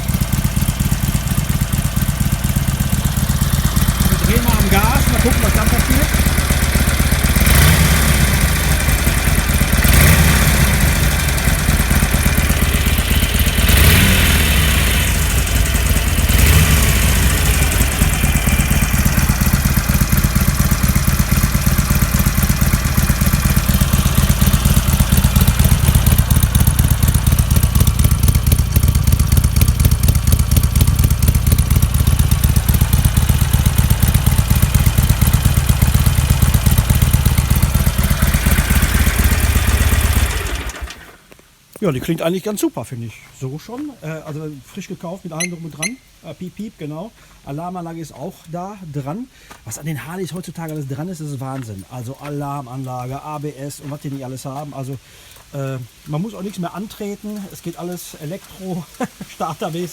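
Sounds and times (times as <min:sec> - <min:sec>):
motorcycle engine revving and idling: 0:00.0 - 0:41.2.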